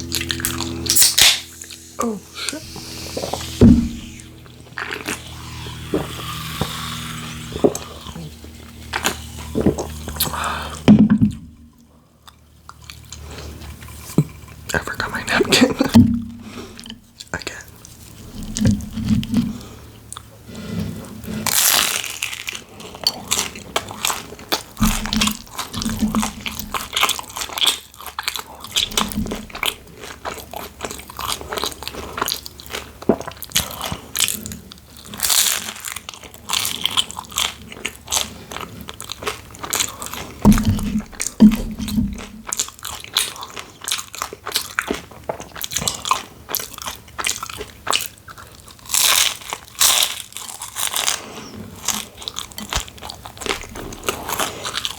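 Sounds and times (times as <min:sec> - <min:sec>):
person chewing noodles: 0:00.0 - 0:10.9, 0:11.8 - 0:54.9
low bumps: 0:00.4 - 0:10.3.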